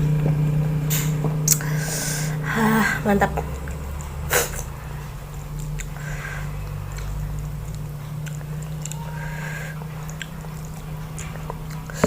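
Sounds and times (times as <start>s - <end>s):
steady low hum: 0.0s - 12.0s
mouth clicks: 0.9s - 2.6s, 3.3s - 12.0s
wet chewing smacks: 3.5s - 12.0s.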